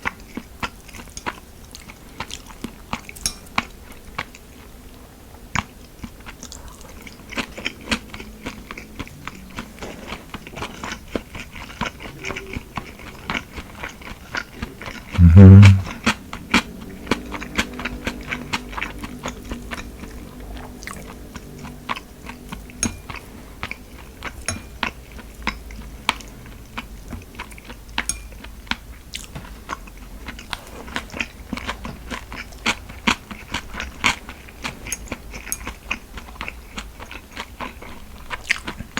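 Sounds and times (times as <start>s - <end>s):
chewing and biting food: 5.5s - 38.9s
brief loud low sound: 15.2s - 15.9s
wet mouth clicks: 15.2s - 15.9s.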